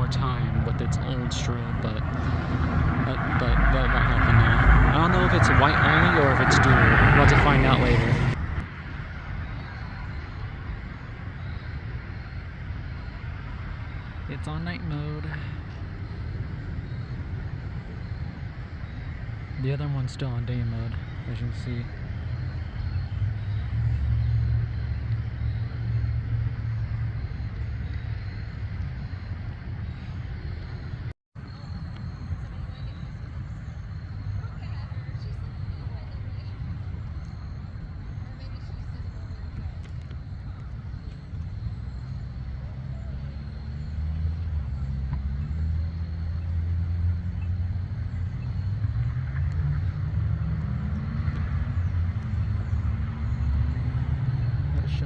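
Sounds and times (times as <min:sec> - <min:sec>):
tyre hiss of passing vehicle: 0:00.0 - 0:08.6
car passing rumble: 0:00.0 - 0:55.0.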